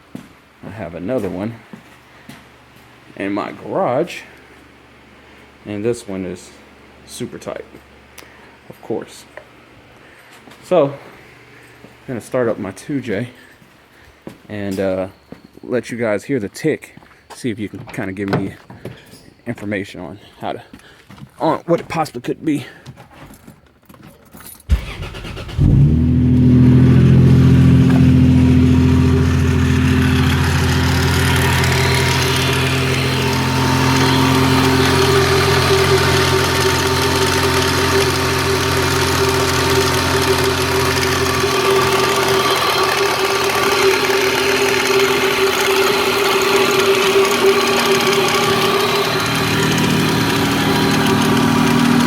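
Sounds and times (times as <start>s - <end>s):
car engine starting and idling: 24.7s - 52.0s
engine ticking: 24.7s - 52.0s.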